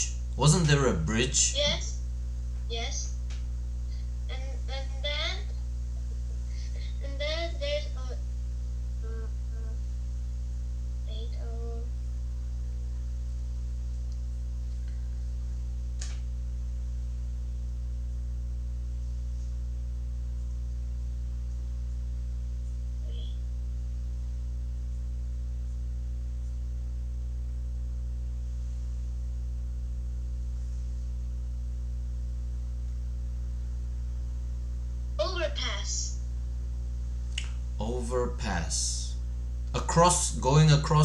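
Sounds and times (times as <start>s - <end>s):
electrical mains hum: 0.0s - 41.0s.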